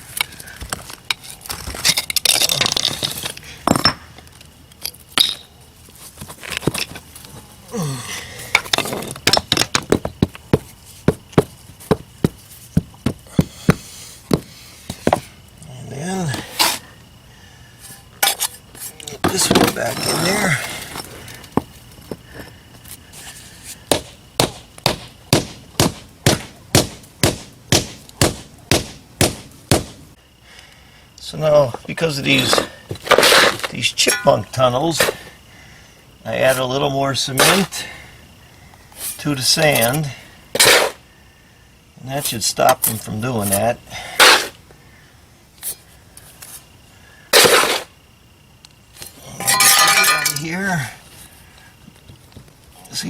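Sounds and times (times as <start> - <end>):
bricks knocking together: 8.6 - 12.0
rubber mallet pounding paver: 9.2 - 15.3, 23.9 - 30.0
metal clinking on stone: 34.0 - 34.6, 49.4 - 50.5.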